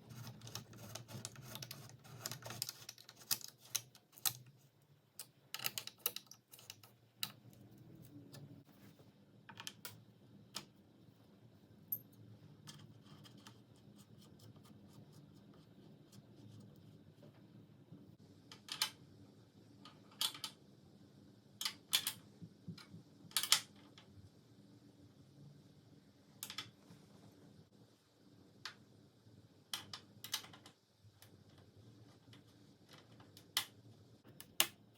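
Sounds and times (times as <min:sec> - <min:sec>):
faint steady hum: 0:00.0 - 0:34.9.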